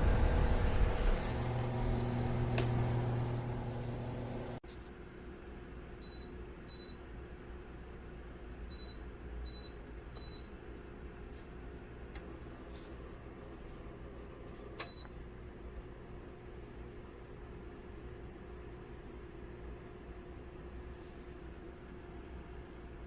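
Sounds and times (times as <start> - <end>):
low steady hum: 0.0 - 23.0
short high appliance beeps: 14.8 - 15.1.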